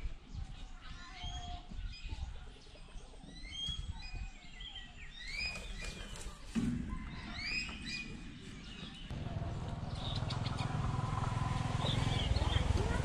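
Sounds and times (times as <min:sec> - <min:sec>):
birds chirping and whistling: 0:00.2 - 0:12.8
low outdoor rumble: 0:08.9 - 0:13.0.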